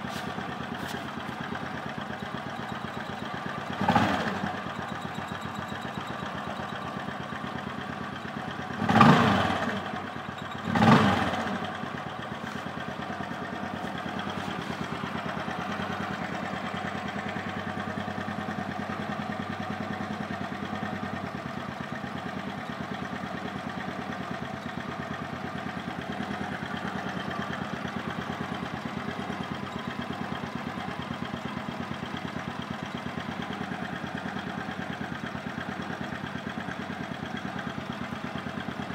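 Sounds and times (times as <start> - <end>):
scooter engine idling and revving: 0.0 - 38.9.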